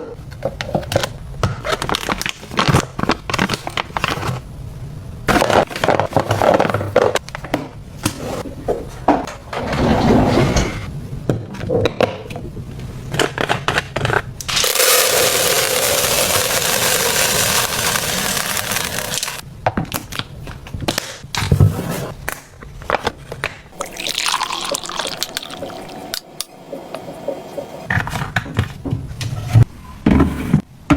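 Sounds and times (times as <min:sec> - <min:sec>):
running water: 0:23.8 - 0:27.9.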